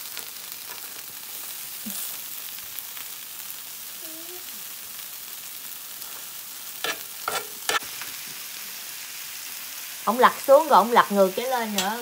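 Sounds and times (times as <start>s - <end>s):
shrimp sizzling in a pan: 0.0s - 12.0s.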